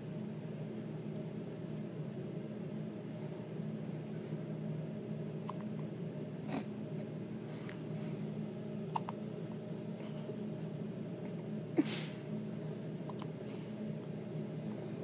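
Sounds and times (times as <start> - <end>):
steady low hum: 0.0 - 15.0
baby hiccuping: 8.9 - 9.2.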